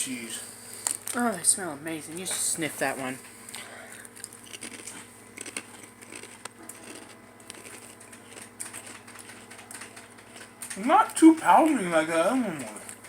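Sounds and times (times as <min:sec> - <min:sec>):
low steady hum: 0:00.0 - 0:13.0
chips crackling and being chewed: 0:03.5 - 0:13.0.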